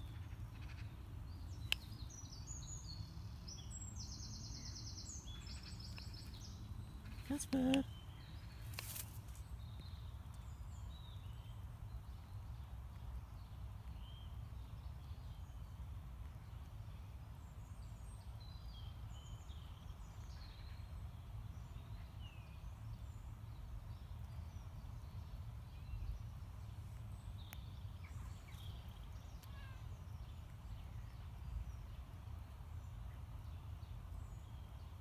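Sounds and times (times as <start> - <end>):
wild birds chirping: 0.0 - 11.6.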